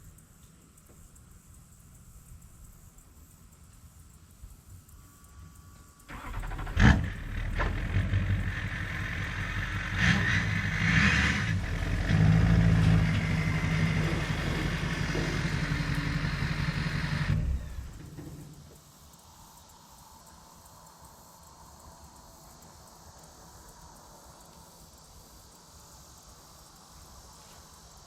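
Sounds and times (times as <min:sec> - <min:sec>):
vehicle engine humming: 0:06.1 - 0:18.8.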